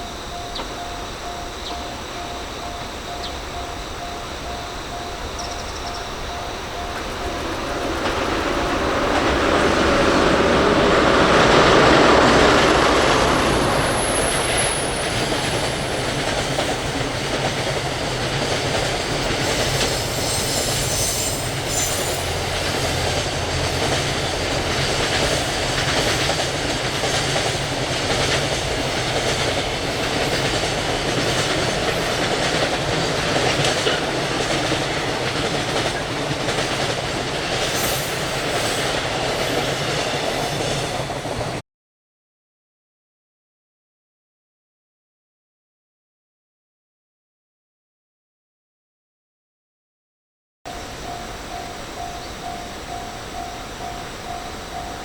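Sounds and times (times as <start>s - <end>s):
train wheels clattering: 0.0s - 41.6s.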